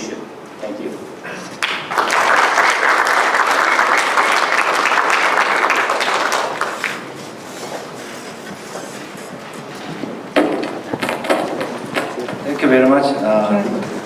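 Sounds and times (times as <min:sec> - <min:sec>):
audience applauding: 0:01.5 - 0:07.6.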